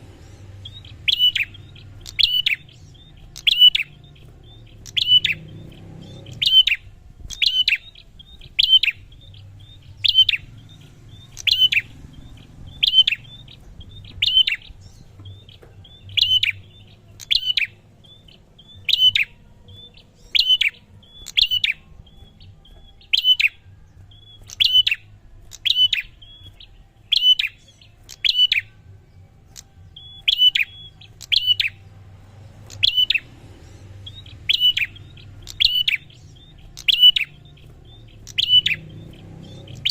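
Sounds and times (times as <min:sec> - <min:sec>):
bird calling sharp notes: 0:00.6 - 0:28.8, 0:29.5 - 0:31.9, 0:32.6 - 0:39.9.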